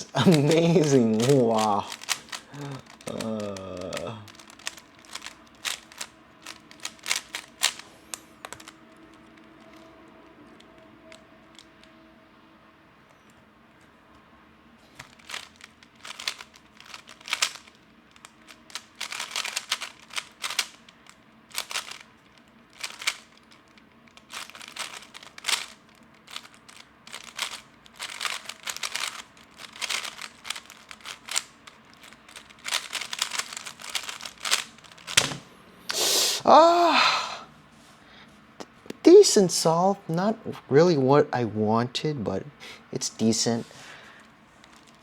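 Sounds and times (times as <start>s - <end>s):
person exclaiming: 0.0s - 4.3s, 35.9s - 37.5s
puzzle cube clicking and rattling: 0.0s - 9.9s, 15.0s - 35.4s, 44.6s - 45.0s.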